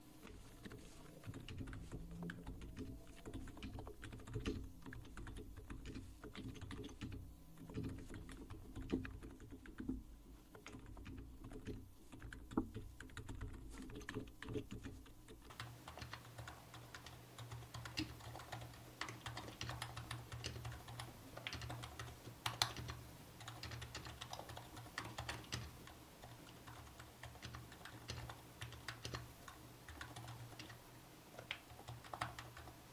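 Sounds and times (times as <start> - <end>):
low background hum: 0.0 - 32.9
keyboard typing: 0.2 - 32.9.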